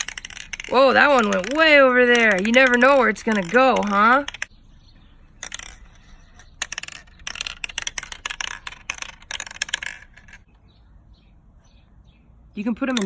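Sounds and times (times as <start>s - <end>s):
marbles clattering through maze: 0.0s - 4.5s, 5.2s - 10.5s.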